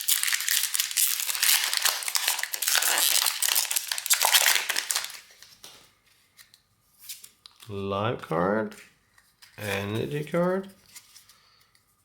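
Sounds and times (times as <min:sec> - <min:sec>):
foil wrapper crinkling: 0:00.0 - 0:05.5.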